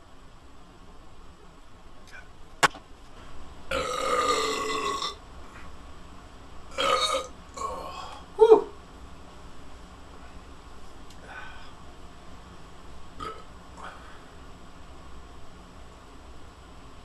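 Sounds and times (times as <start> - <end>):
sharp click: 2.6 - 2.8
person burping: 3.7 - 5.2, 6.7 - 8.2, 13.2 - 13.4.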